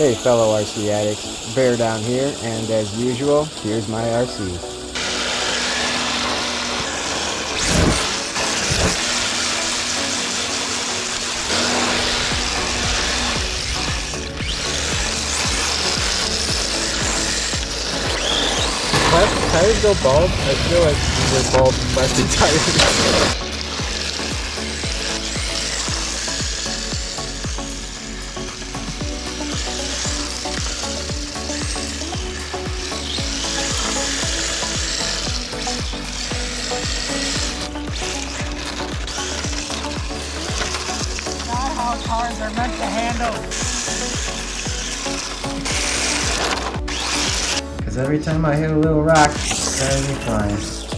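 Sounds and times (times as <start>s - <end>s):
toy car motor whining: 0.0s - 47.8s, 49.2s - 50.9s
tires scraping hiss: 0.0s - 50.9s
low thumps dropping in pitch: 11.9s - 50.9s.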